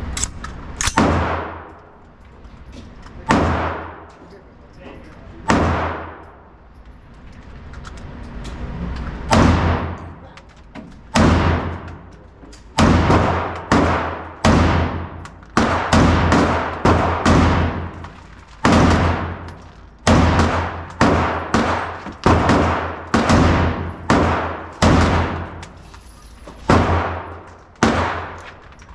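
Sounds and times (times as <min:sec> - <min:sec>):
rifle firing semi-automatic: 0:12.8 - 0:25.8, 0:26.7 - 0:28.6.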